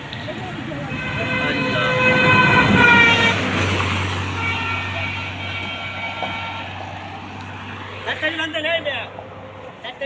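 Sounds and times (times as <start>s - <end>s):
vehicle engine humming: 0.0s - 10.0s
vehicle horn passing: 0.8s - 7.0s.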